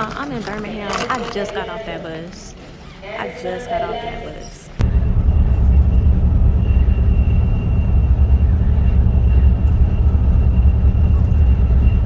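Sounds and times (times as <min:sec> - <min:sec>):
diesel engine rumbling: 0:04.8 - 0:12.0
faint high whine: 0:04.8 - 0:12.0.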